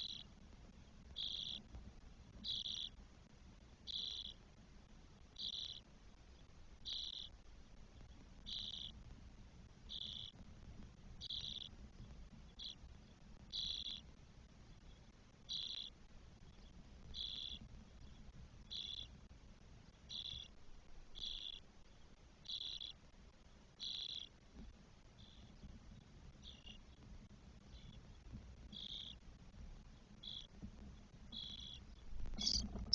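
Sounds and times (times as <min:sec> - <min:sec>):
nestlings raspy begging calls: 0:01.2 - 0:01.6, 0:02.4 - 0:02.9, 0:03.9 - 0:04.4, 0:08.5 - 0:08.9, 0:13.5 - 0:14.0, 0:32.4 - 0:32.9.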